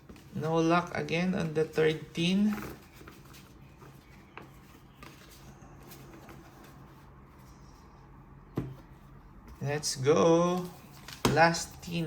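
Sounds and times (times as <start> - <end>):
trading cards rustling: 0.0 - 7.9, 10.2 - 12.0
low room hum: 0.0 - 12.0.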